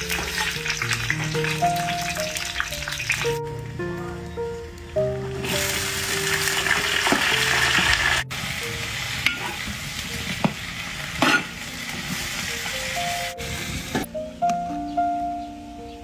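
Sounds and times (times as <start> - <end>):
food sizzling in hot oil: 0.0 - 3.4, 5.4 - 14.1.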